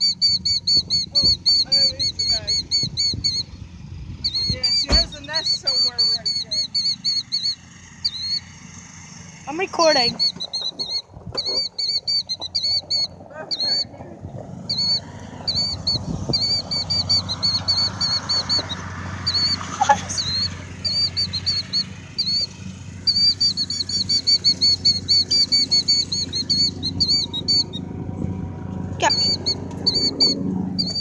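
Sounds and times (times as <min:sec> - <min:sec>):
high-pitched chirps: 0:00.0 - 0:03.6, 0:04.2 - 0:08.5, 0:09.9 - 0:13.9, 0:14.7 - 0:27.8, 0:29.0 - 0:31.0
sweeping squeal: 0:14.7 - 0:27.8.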